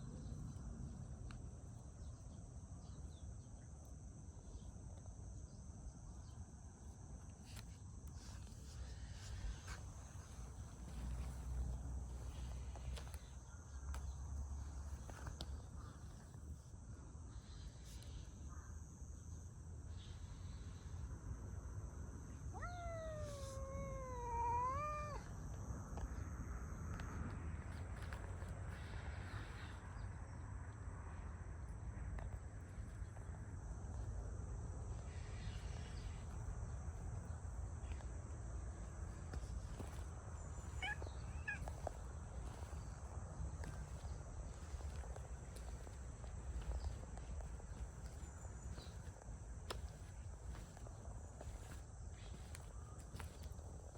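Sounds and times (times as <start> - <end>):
cat meowing: 22.5 - 25.3, 40.6 - 41.8.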